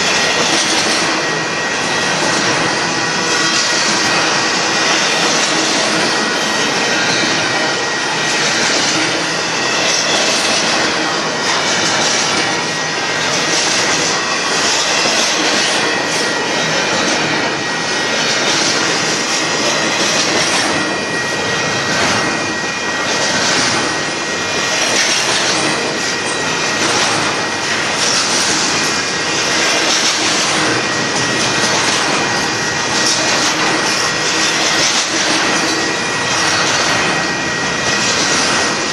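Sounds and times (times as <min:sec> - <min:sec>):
steel wheels rushing on rail: 0:00.0 - 0:38.9
wheels clacking over rail joints: 0:00.0 - 0:38.9.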